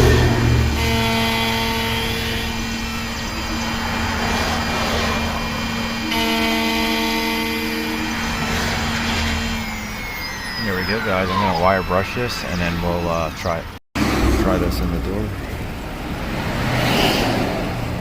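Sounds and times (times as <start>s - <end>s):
high-pitched tones: 0.0s - 13.7s.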